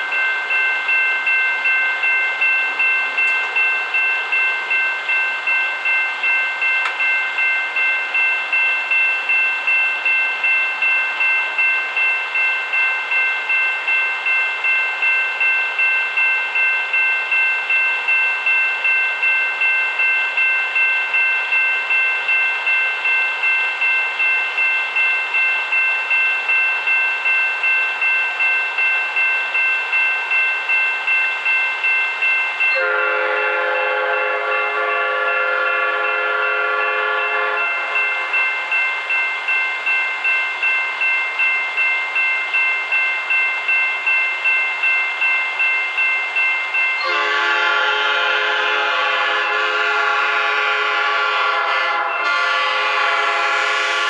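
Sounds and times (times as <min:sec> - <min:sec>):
train air horn chord: 0:32.8 - 0:37.8, 0:47.0 - 0:54.0.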